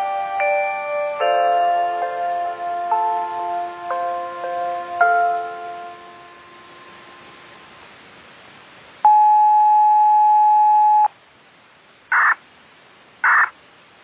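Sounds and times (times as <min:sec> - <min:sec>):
steady single-pitch beep: 0:09.1 - 0:11.1
burst of radio static: 0:12.1 - 0:12.4, 0:13.2 - 0:13.6
radio hiss: 0:12.1 - 0:12.4, 0:13.2 - 0:14.0.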